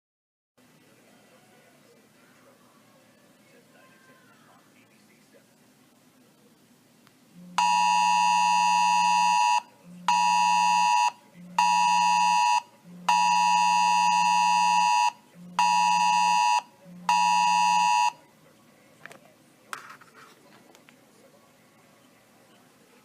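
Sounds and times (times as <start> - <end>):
phone alarm blasts: 7.6 - 18.2.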